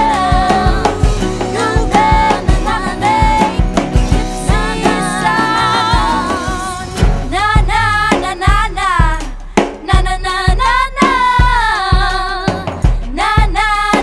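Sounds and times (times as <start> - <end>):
guitar and band backing: 0.0 - 8.6
kick drum beat: 0.0 - 14.0
woman singing with vibrato: 0.0 - 14.0.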